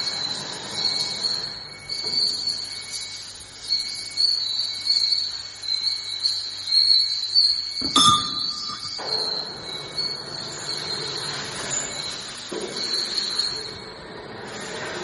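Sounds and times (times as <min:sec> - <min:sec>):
sharp metallic clank: 0:07.8 - 0:09.4.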